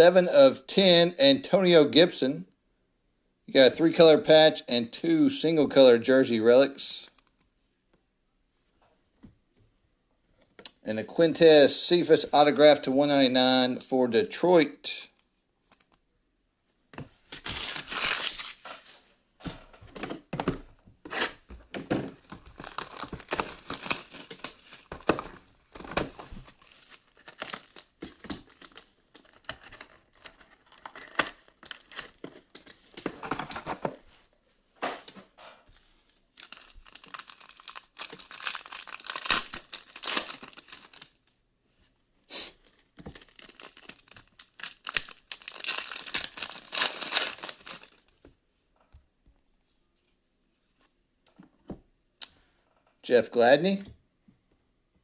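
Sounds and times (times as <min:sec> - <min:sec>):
foil wrappers tearing and crinkling: 0:17.4 - 0:19.0, 0:22.3 - 0:33.0, 0:36.4 - 0:41.2, 0:43.1 - 0:48.1.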